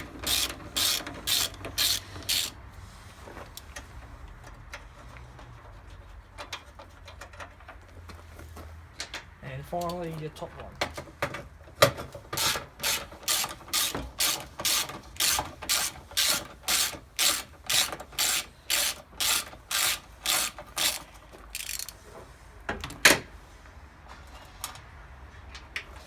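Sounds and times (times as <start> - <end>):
ratchet clicking: 0.0 - 2.6, 12.4 - 22.0.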